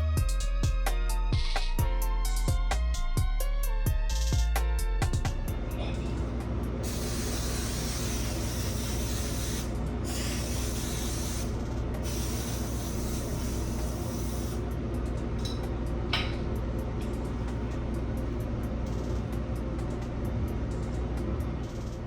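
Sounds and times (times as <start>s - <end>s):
hair dryer blowing: 6.8s - 14.6s.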